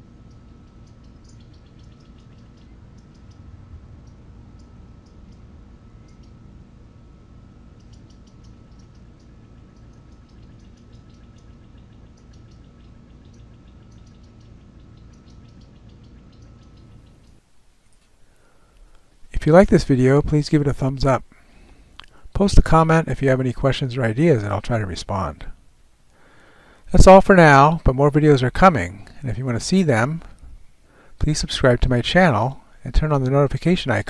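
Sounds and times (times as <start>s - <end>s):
steady low rumble: 2.3s - 8.6s.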